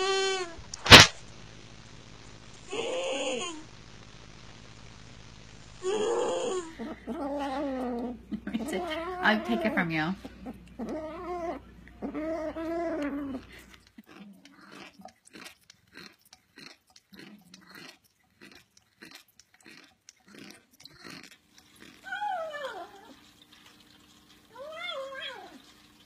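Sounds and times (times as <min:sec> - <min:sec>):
cat chewing with crunching: 0:10.2 - 0:26.0.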